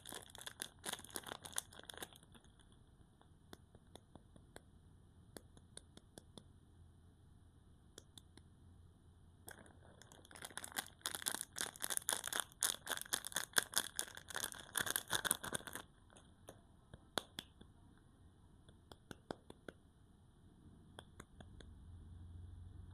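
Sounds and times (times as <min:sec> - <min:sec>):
wrapper crinkling: 0:00.0 - 0:02.7, 0:09.5 - 0:16.2.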